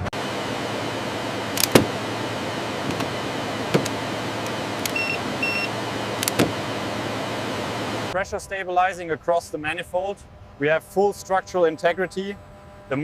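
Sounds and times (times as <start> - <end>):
sharp mechanical clicks and knocks: 1.5 - 2.0, 2.9 - 5.1, 6.2 - 6.6
short electronic beeps: 4.9 - 5.8.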